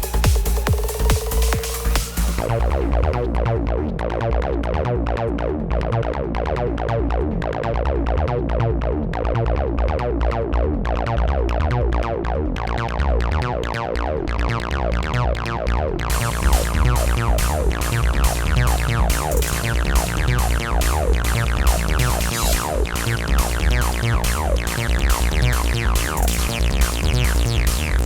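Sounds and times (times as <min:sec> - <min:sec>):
drum-machine beat: 0:00.0 - 0:03.2, 0:16.0 - 0:28.0
synthesizer line: 0:00.0 - 0:04.7, 0:11.2 - 0:28.0
heavy bass: 0:00.0 - 0:28.0.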